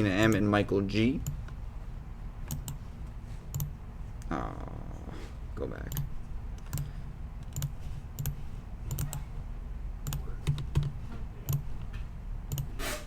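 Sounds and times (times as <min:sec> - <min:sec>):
keyboard and mouse clicking: 0:02.5 - 0:02.8, 0:03.5 - 0:03.8, 0:05.9 - 0:09.2, 0:10.0 - 0:11.9, 0:12.5 - 0:12.8.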